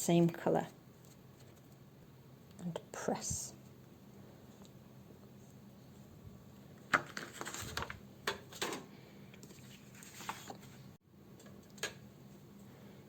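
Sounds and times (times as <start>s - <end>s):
paper rustling: 6.8s - 10.9s.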